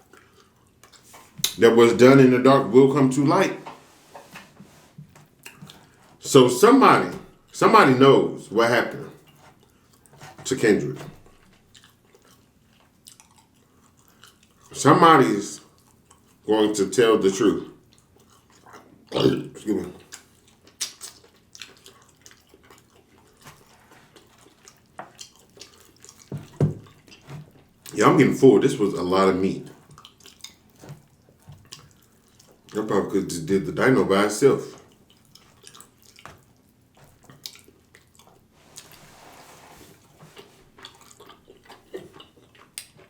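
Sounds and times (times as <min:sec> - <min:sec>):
wet chewing and lip-smacking: 0:00.0 - 0:01.6, 0:05.2 - 0:06.2, 0:09.2 - 0:10.3, 0:11.2 - 0:14.8, 0:15.6 - 0:16.5, 0:17.8 - 0:19.1, 0:19.9 - 0:28.0, 0:29.6 - 0:32.8, 0:34.7 - 0:38.9, 0:40.2 - 0:43.0.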